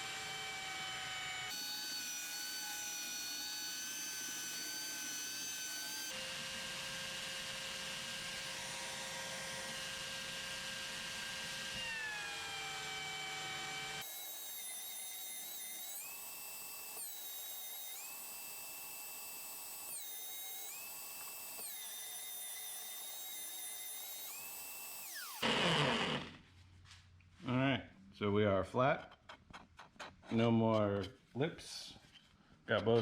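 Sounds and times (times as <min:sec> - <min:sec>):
belt sander whining: 0:11.8 - 0:26.4.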